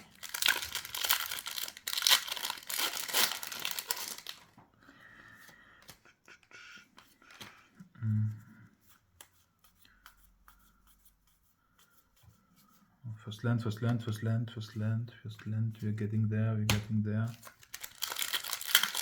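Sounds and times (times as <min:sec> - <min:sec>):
cards rustling: 0:00.0 - 0:04.6, 0:05.2 - 0:10.8, 0:16.7 - 0:19.0
foil wrapper tearing and crinkling: 0:00.0 - 0:04.6, 0:17.4 - 0:19.0.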